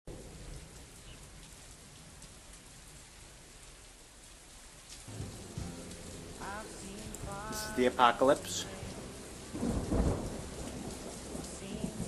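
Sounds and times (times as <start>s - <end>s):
heavy rain hissing: 0.1s - 12.0s
low rumble: 5.1s - 12.0s.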